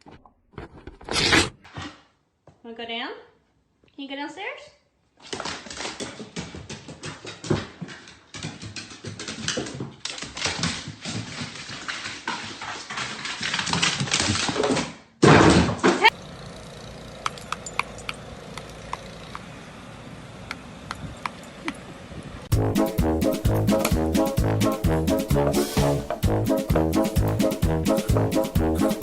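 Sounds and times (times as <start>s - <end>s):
dog's claws clicking on floor: 5.2s - 14.9s.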